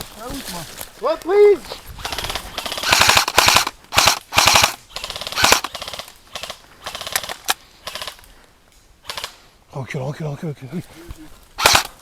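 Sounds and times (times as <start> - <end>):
airsoft guns firing bursts: 2.0 - 8.2, 11.6 - 12.0.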